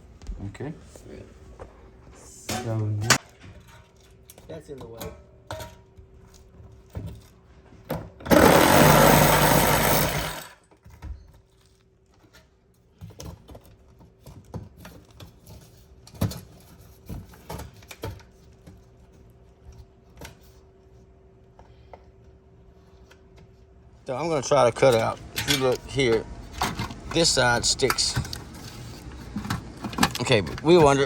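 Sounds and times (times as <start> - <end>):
power tool running: 8.3 - 10.6.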